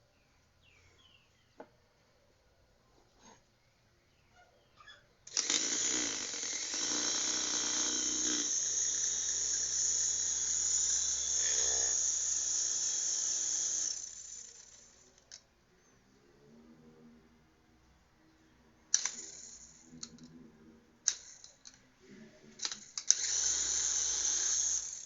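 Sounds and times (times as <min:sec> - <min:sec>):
electric fan motor whirring: 0:05.3 - 0:15.1, 0:22.6 - 0:25.0.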